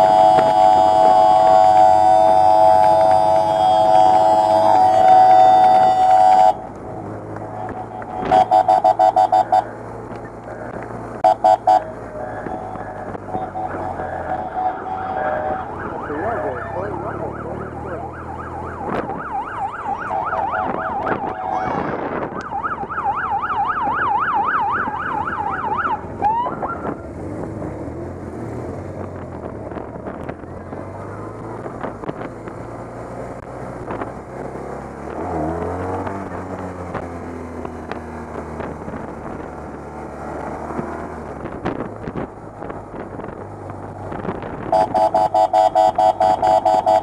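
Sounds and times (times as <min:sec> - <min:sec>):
police siren yelping: 0:00.0 - 0:06.7, 0:07.6 - 0:09.6, 0:11.2 - 0:27.0, 0:44.7 - 0:47.0
motorcycle engines revving: 0:00.0 - 0:47.0.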